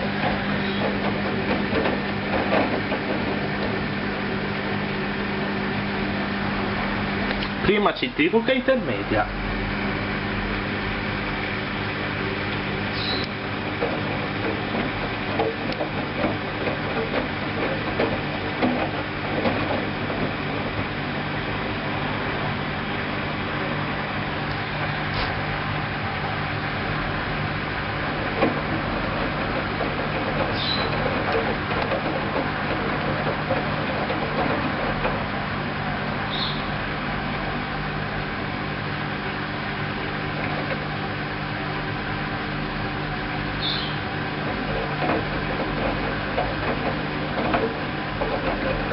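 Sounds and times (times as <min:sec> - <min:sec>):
washing machine drum knocking: 0:00.0 - 0:04.5, 0:13.2 - 0:21.9, 0:27.3 - 0:35.4, 0:43.6 - 0:48.9
washing machine motor hum: 0:00.0 - 0:48.9.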